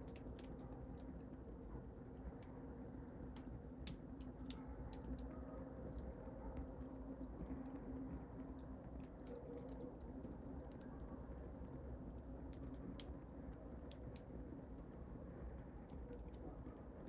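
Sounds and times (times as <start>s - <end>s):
wood fire crackling: 0.0s - 1.4s, 2.9s - 5.1s, 11.4s - 16.9s.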